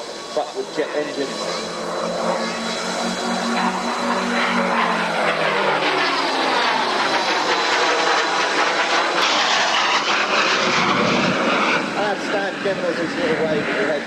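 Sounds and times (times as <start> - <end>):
jet aircraft engine roar: 0.0 - 14.0.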